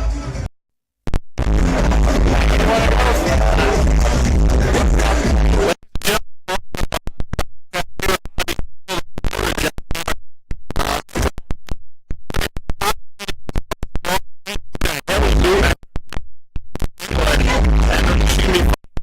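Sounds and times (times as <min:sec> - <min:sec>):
stuttering electronic music: 0:01.4 - 0:05.8, 0:15.1 - 0:15.8, 0:17.1 - 0:18.8
dj scratching: 0:01.4 - 0:06.2, 0:07.8 - 0:10.1, 0:10.8 - 0:11.4, 0:14.8 - 0:15.8, 0:17.0 - 0:18.8.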